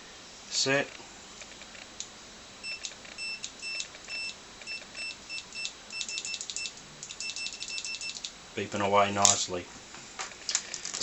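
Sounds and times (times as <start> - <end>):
multimeter high beeps: 2.6 - 8.3.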